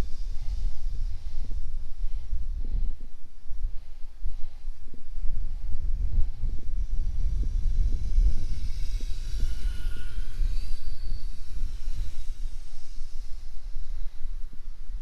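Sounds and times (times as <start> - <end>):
wind rumble on microphone: 0.0 - 15.0
electric motor whine: 6.6 - 14.6.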